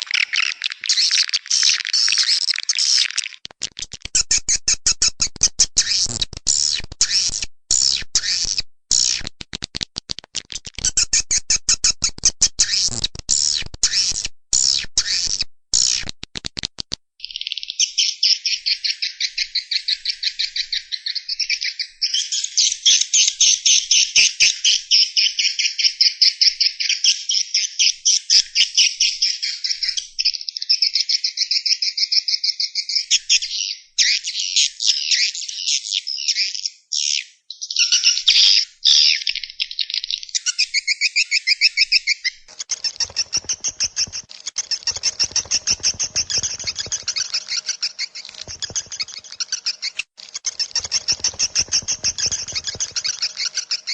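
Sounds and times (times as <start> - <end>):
swiftlets twittering: 42.6 - 53.9.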